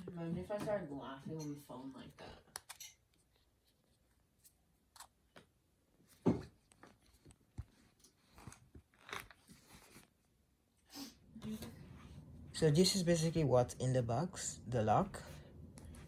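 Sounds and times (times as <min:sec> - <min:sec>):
light clicks and rustles of packaging: 0:02.5 - 0:10.3.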